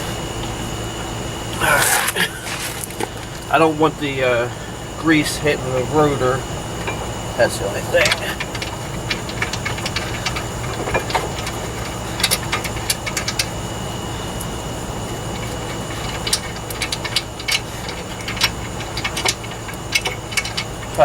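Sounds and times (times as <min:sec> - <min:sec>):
low background hum: 0:00.0 - 0:21.0
metal tools clinking: 0:06.2 - 0:13.5, 0:15.3 - 0:21.0.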